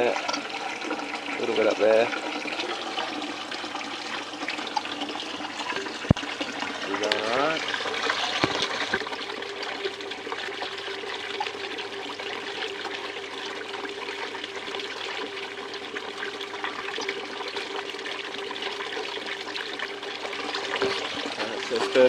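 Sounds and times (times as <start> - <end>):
water trickling over table: 0.0 - 22.0.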